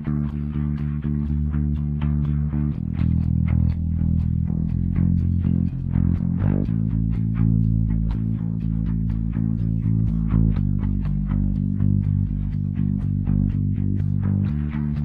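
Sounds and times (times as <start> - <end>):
bass guitar plucked notes: 0.0 - 15.0.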